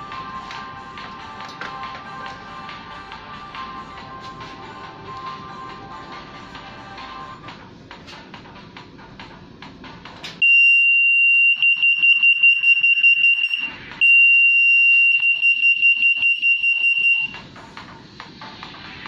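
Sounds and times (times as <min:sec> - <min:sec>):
security gate alarm tone: 0:10.4 - 0:17.4.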